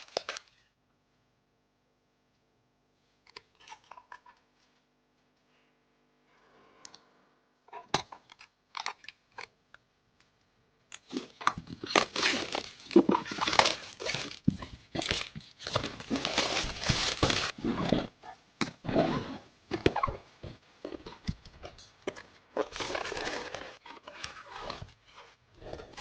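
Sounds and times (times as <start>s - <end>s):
packaging crinkling and rustling: 0.0s - 0.6s, 11.0s - 18.2s, 19.7s - 26.0s.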